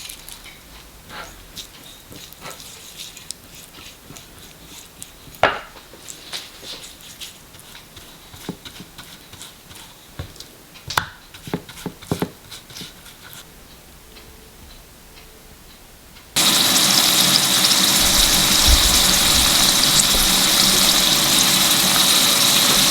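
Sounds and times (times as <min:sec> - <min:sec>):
kitchen utensils and dishes knocking: 0:05.4 - 0:05.9.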